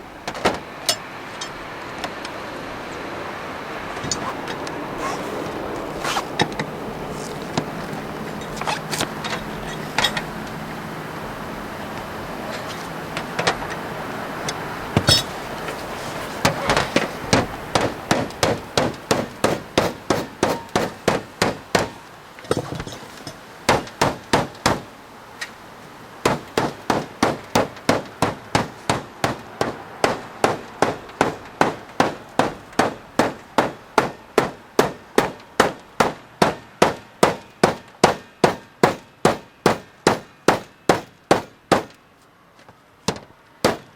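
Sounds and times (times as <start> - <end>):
steady hiss: 0.0 - 43.9
hammer striking metal roofing sheet: 0.2 - 2.4, 15.0 - 24.9, 26.2 - 42.0, 43.0 - 43.9.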